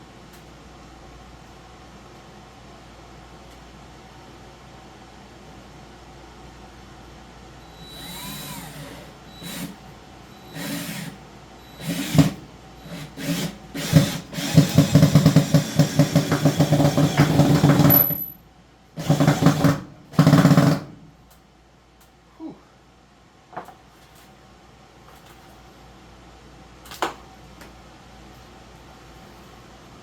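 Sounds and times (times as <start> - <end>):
power screwdriver driving screws: 11.8 - 18.3.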